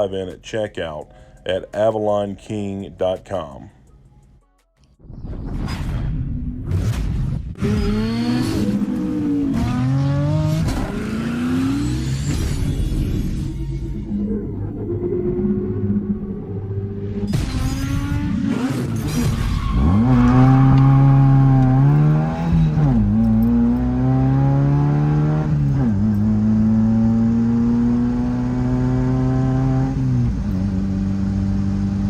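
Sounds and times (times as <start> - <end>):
car engine accelerating: 7.6 - 32.0.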